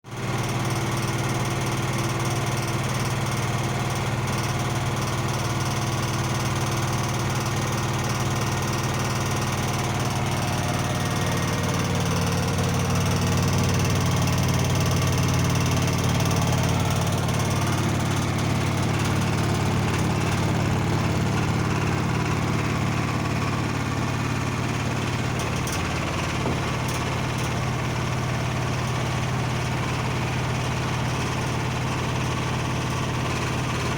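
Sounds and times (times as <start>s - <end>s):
washing machine spinning: 0.6s - 33.9s.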